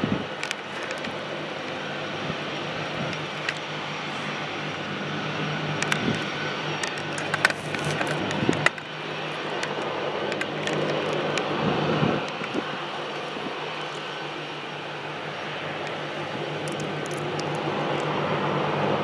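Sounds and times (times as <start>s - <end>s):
aircraft engine drone: 0.0s - 19.0s
sharp clicks: 5.8s - 11.5s.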